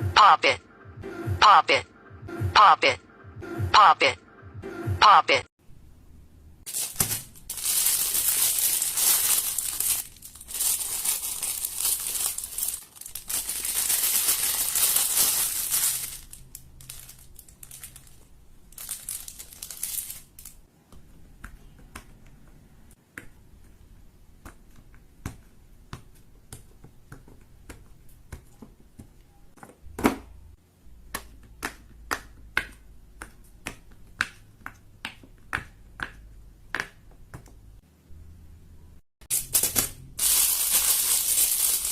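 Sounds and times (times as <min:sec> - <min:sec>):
fidget toys crinkling: 0:06.7 - 0:20.6, 0:39.4 - 0:41.9.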